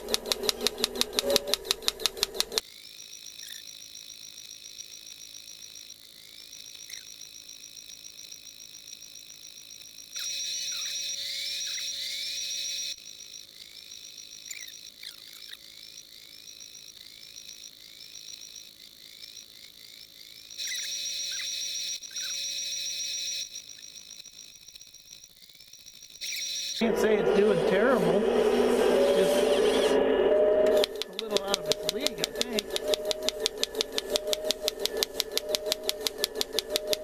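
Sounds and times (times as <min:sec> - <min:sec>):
insects chirping: 0:00.0 - 0:27.0, 0:30.8 - 0:37.0
electric motor whine: 0:03.2 - 0:37.0.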